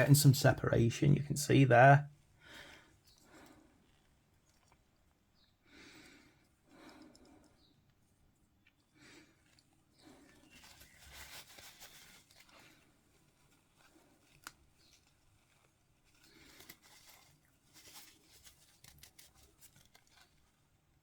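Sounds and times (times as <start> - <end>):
faint rustling: 8.7 - 21.0.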